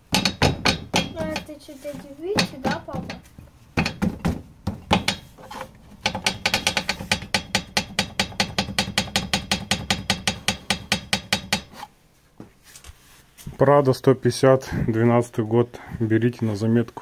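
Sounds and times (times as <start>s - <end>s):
car metallic knocking rattle: 0.0s - 1.5s, 2.4s - 11.7s.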